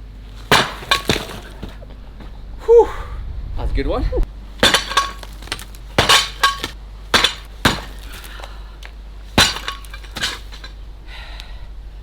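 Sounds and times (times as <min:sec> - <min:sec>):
broken brick pieces clinking: 0:00.3 - 0:01.9, 0:04.5 - 0:10.8
sledgehammer striking brickwork: 0:00.3 - 0:02.3, 0:04.5 - 0:10.8.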